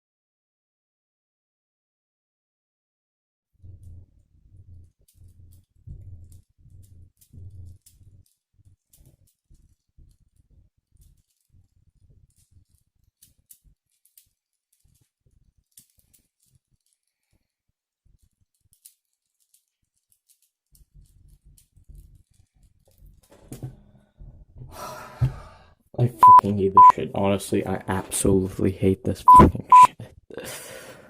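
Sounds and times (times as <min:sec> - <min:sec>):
puzzle cube plastic clicks: 0:18.1 - 0:23.1.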